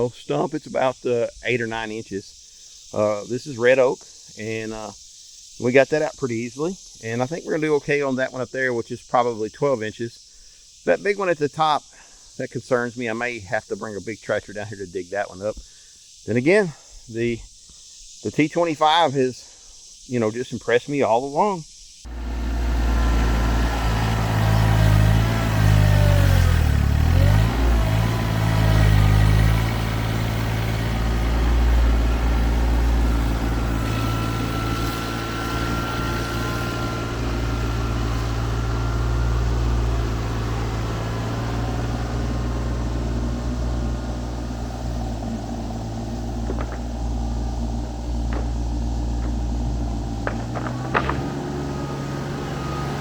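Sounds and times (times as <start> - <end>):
tractor diesel engine running: 22.1 - 53.0.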